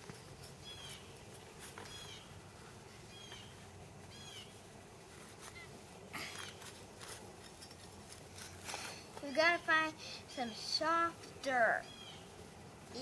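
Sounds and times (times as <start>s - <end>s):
bird chirping: 0.6s - 1.2s, 1.8s - 4.6s, 11.8s - 12.3s.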